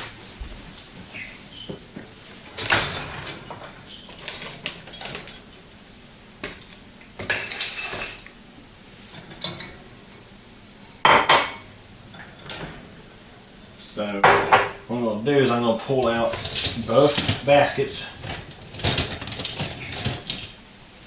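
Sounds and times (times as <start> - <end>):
dishes clinking and clattering: 1.6 - 8.4, 9.1 - 13.3, 14.2 - 14.9, 15.5 - 20.6.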